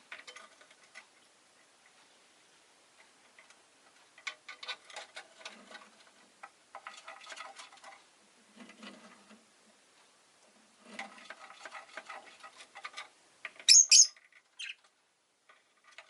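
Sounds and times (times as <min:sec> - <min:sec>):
lovebird chattering: 0:13.7 - 0:14.8.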